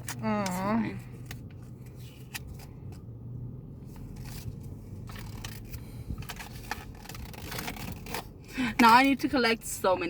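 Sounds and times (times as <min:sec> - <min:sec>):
low car interior hum: 0:00.0 - 0:10.0
plastic toys and packaging rustling: 0:04.0 - 0:09.2.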